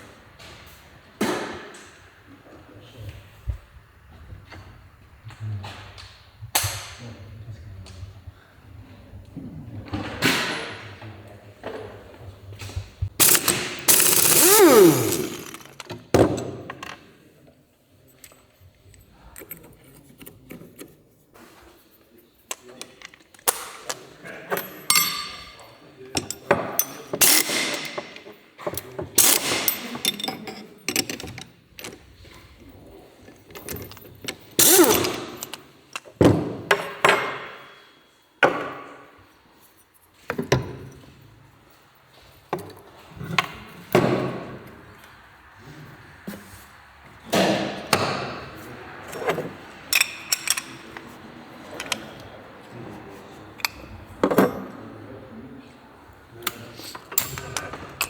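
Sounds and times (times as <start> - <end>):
metal parts knocking and clanking: 13.2 - 17.0, 24.6 - 32.1, 33.2 - 37.6, 49.1 - 51.1.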